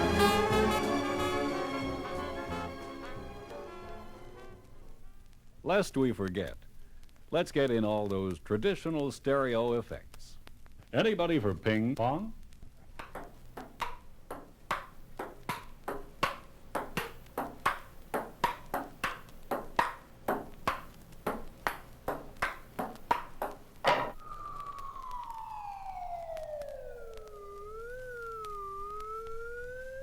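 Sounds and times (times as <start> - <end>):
table-tennis ball clicks: 13.0 - 24.2
siren wailing: 23.9 - 30.0.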